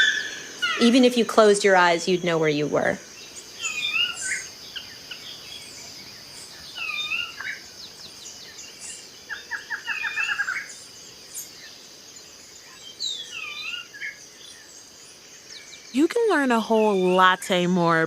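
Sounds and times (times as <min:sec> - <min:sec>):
swooping bird call: 0:00.0 - 0:01.2, 0:03.6 - 0:05.2, 0:06.7 - 0:07.6, 0:09.3 - 0:10.8
birds calling: 0:00.0 - 0:18.0.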